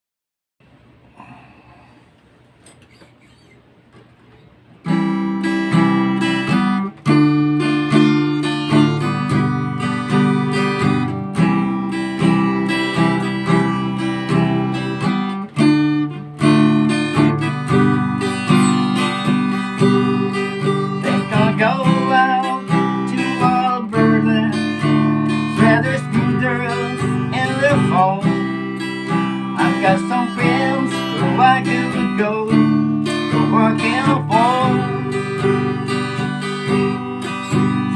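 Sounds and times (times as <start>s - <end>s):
picked guitar melody: 4.3s - 37.9s
acoustic guitar strumming chords: 4.7s - 37.9s.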